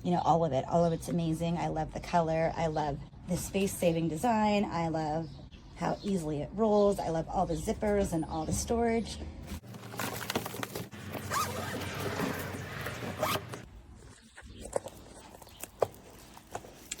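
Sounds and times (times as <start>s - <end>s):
suitcase rustling and scraping: 9.4s - 17.0s.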